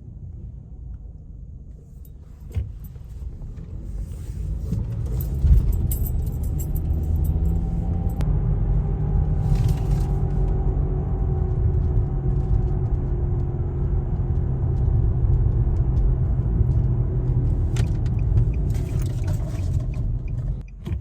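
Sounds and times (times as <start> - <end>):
car engine and road rumble: 0.0 - 21.0
light rattles: 2.0 - 8.2.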